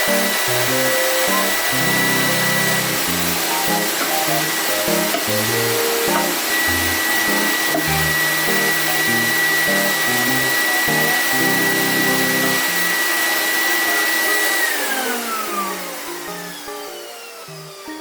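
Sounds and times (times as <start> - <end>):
background music: 0.0 - 13.0
vacuum cleaner whine: 0.0 - 18.0.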